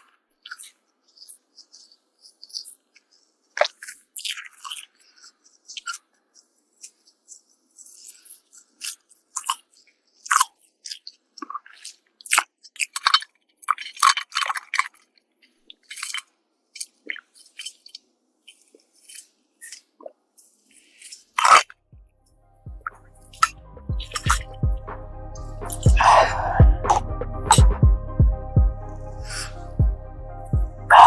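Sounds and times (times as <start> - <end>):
wet mouth clicks and smacks: 3.6 - 6.0
soft music: 22.0 - 31.0.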